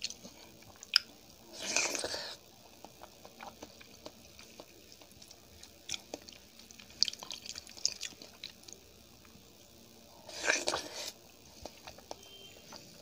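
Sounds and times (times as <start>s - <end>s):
person chewing food: 0.0s - 9.4s, 10.1s - 13.0s.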